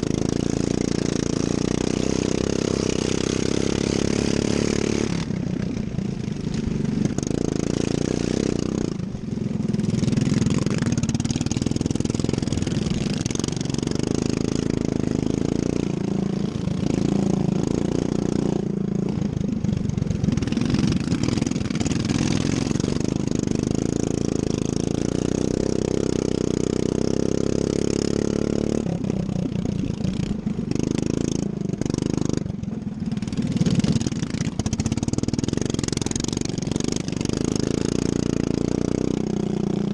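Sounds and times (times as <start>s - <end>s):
racing lawn mower engine: 0.0s - 39.9s.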